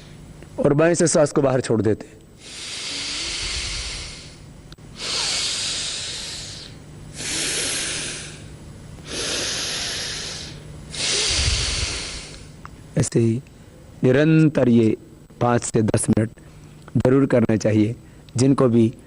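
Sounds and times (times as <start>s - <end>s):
person breathing through nostril: 2.4s - 12.6s.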